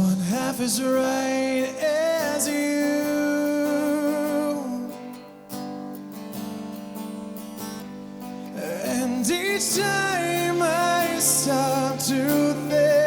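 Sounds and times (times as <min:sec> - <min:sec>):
person singing: 0:00.0 - 0:05.5, 0:08.3 - 0:13.0
strummed acoustic guitar: 0:00.0 - 0:13.0.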